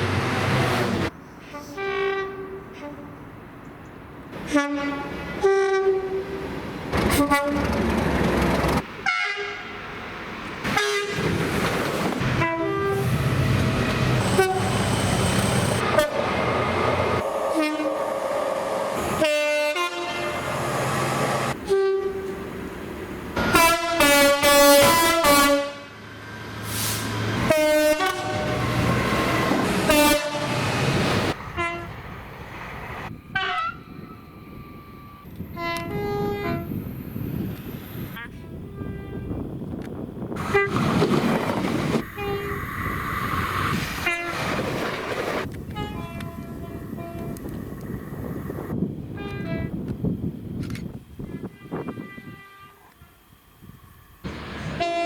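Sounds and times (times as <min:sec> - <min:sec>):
rumble of passing trains: 0:00.0 - 0:55.0
train horn blasts: 0:01.4 - 0:03.2, 0:04.4 - 0:06.4, 0:09.0 - 0:09.8, 0:10.7 - 0:11.2, 0:12.3 - 0:13.2, 0:14.3 - 0:14.8, 0:15.8 - 0:16.3, 0:17.2 - 0:20.7, 0:21.6 - 0:22.4, 0:23.4 - 0:26.0, 0:27.4 - 0:28.7, 0:29.8 - 0:30.6, 0:31.5 - 0:31.9, 0:33.3 - 0:33.8, 0:35.5 - 0:36.7, 0:38.3 - 0:39.4, 0:45.7 - 0:47.4, 0:49.1 - 0:49.8, 0:51.3 - 0:53.3, 0:54.7 - 0:55.0.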